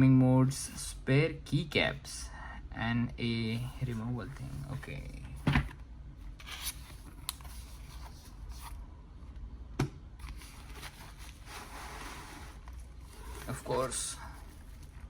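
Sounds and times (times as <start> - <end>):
packaging scraping and rustling: 10.2 - 15.0.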